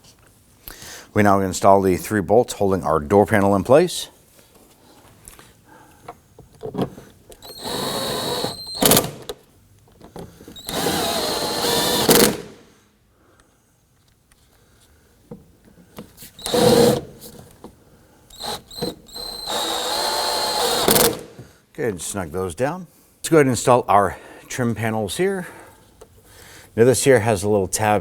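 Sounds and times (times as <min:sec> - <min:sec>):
power drill whining: 0:07.3 - 0:09.2, 0:10.5 - 0:12.5, 0:16.4 - 0:17.0, 0:18.3 - 0:21.2.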